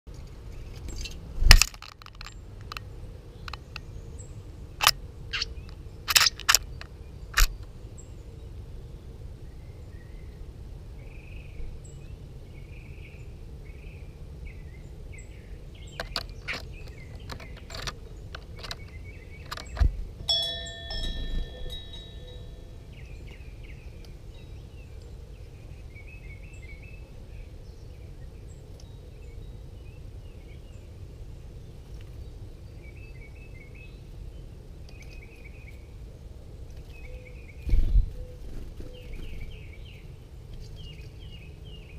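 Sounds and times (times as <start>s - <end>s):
sharp clicks and knocks: 0.1s - 2.8s, 16.0s - 20.3s
low background noise: 0.1s - 41.9s
bell ringing: 20.3s - 22.8s
faint bird chirps: 20.8s - 27.0s.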